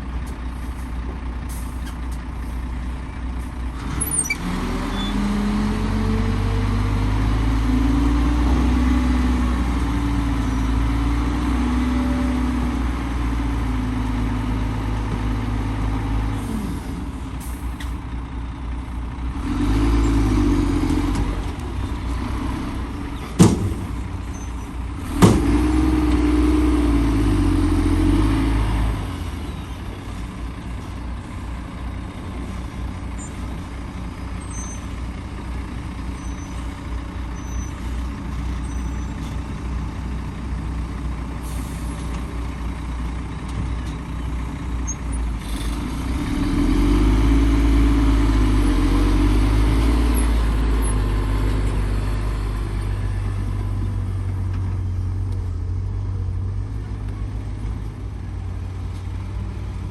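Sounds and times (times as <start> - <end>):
diesel construction machinery engine: 0.0 - 59.9
sharp bangs: 23.4 - 24.1.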